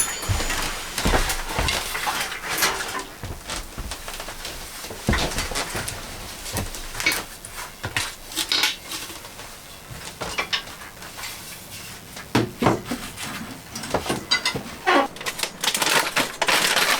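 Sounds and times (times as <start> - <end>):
hard objects clinking and knocking: 0.0 - 4.4.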